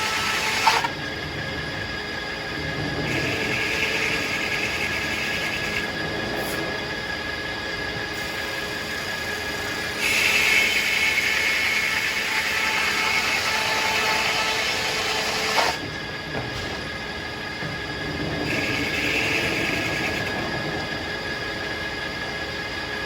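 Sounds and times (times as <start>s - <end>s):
saw blade cutting log: 0.0s - 0.9s, 10.0s - 15.8s
circular sawmill running: 0.0s - 23.0s.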